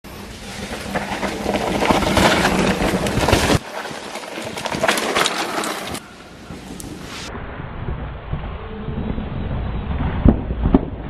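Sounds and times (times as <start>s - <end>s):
bike rattling: 0.1s - 7.3s
bike tyres crunching on dirt: 0.1s - 7.3s
loud low rumble: 6.2s - 11.0s.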